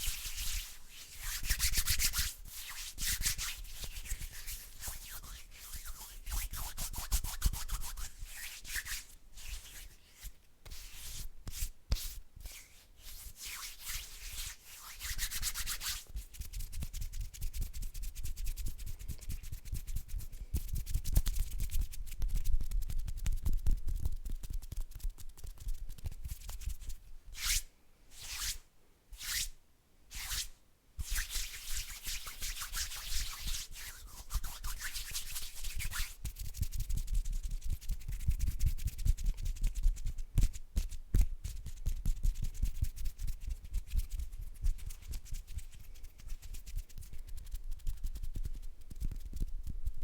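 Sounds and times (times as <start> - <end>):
hands rubbing together: 0.0 - 16.5, 30.1 - 36.2.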